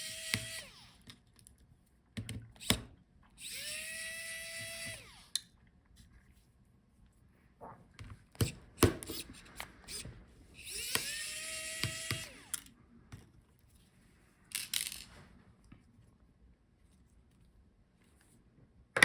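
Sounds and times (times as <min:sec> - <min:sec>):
electric screwdriver spinning: 0:00.0 - 0:01.0, 0:03.4 - 0:05.4, 0:09.1 - 0:12.7
screws and tools clicking: 0:00.0 - 0:01.2, 0:03.4 - 0:05.5, 0:09.1 - 0:12.7.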